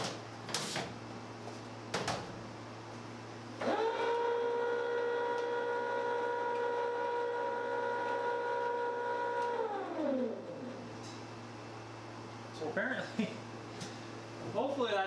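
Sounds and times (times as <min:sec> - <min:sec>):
electric motor whine: 0:03.6 - 0:10.8.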